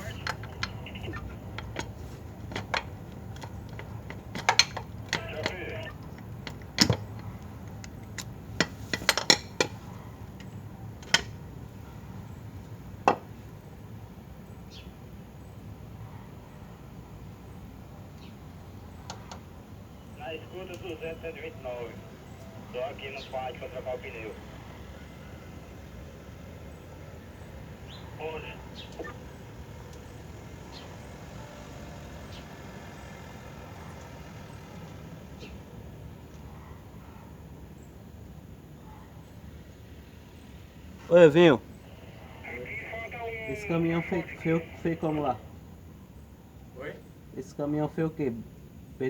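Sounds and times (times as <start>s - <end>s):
metal tools clinking: 0.0s - 9.7s
vehicle engine rumbling: 0.0s - 14.0s.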